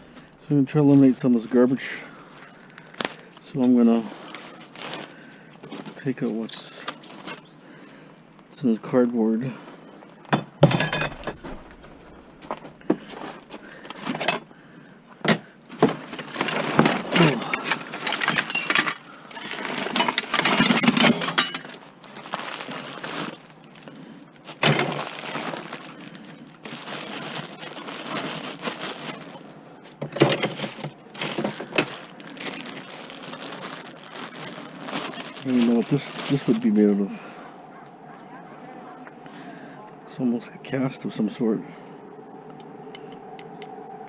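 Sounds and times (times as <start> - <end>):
rustling: 0.0 - 8.1, 9.5 - 39.9
hard objects clattering: 15.3 - 22.0, 26.6 - 36.6.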